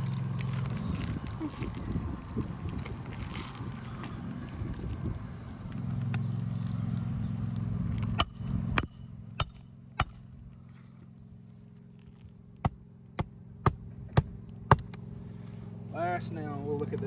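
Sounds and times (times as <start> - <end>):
steady low hum: 0.0 - 16.6
hammer striking roofing nails: 8.2 - 10.2, 12.6 - 15.0.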